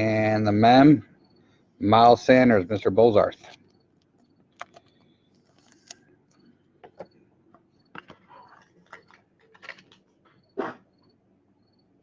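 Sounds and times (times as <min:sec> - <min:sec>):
trading cards and plastic holders handled: 0:03.4 - 0:10.4.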